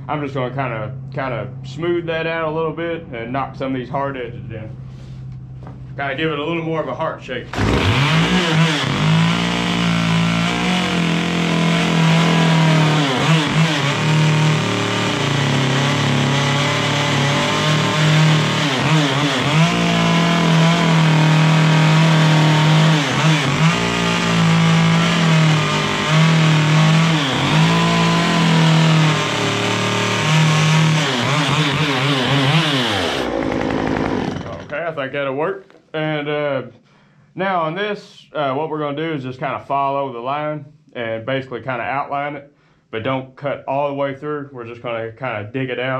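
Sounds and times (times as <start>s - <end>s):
chainsaw cutting wood: 7.5s - 34.9s.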